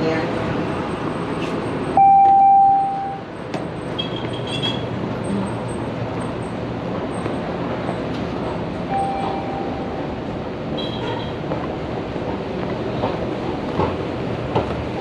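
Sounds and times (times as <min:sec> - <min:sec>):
rail vehicle running noise: 0:00.0 - 0:15.0
brief beep-like tone: 0:02.0 - 0:03.2, 0:08.9 - 0:09.8.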